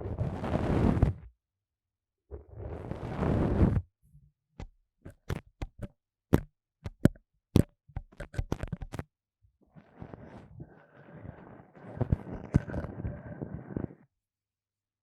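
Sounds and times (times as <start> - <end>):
pipe cleaners scratching microphone: 9.9 - 14.0.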